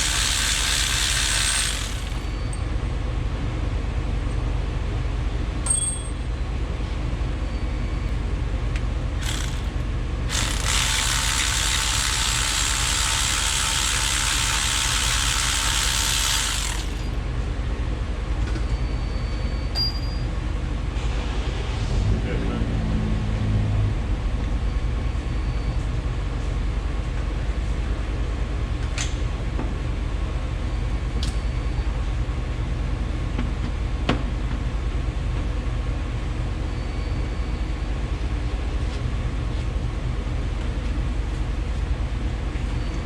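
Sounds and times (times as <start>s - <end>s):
ratchet wrench clicking: 0.0s - 2.3s, 9.2s - 17.1s.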